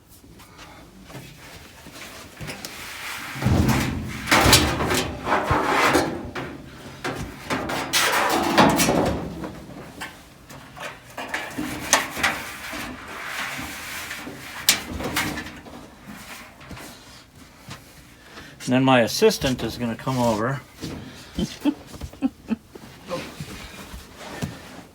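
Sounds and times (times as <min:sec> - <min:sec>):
sheet metal scraping and clunking: 0:02.4 - 0:17.1
sharp knocks: 0:03.4 - 0:06.7.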